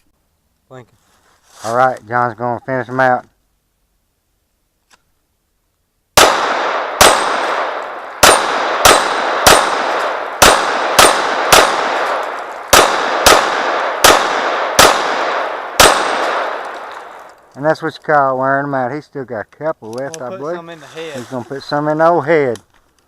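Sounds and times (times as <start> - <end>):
handgun shots: 6.2 - 17.2.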